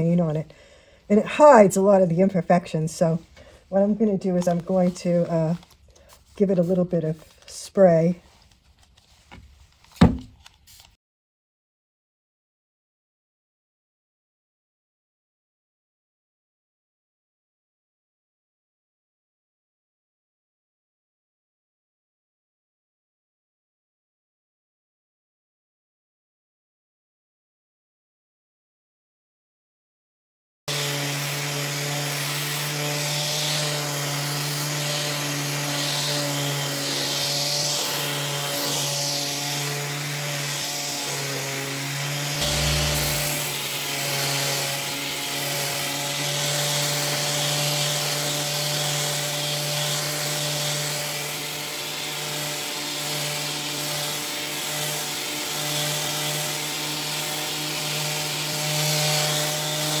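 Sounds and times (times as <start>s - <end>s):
electric sander on wood: 2.2s - 8.2s, 30.7s - 60.0s.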